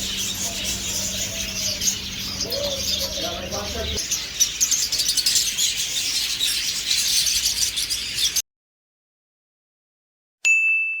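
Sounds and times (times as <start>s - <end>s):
caged birds chirping: 0.0s - 8.4s.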